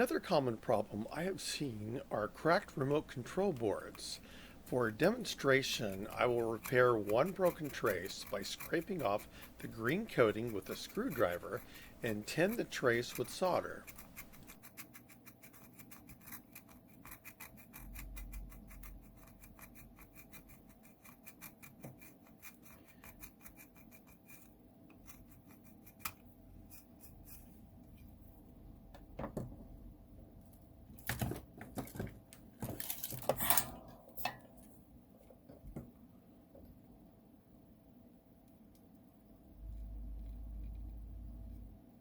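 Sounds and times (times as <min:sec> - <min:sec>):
screwdriver scratching circuit board: 0:00.7 - 0:27.5.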